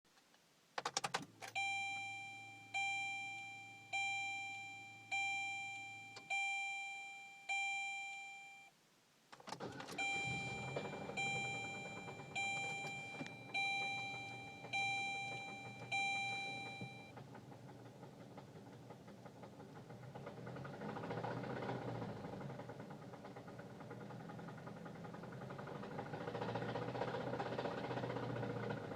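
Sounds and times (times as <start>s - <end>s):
car engine cranking and starting: 0.8s - 5.3s, 9.3s - 28.9s
dashboard warning chime: 1.4s - 8.8s, 9.6s - 17.2s.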